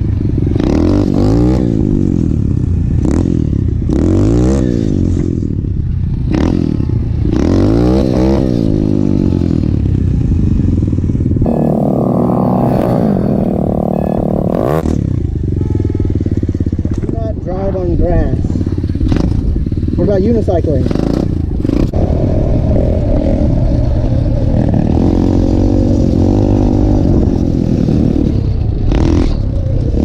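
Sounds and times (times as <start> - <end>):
motorbike engine revving: 11.4 - 17.1.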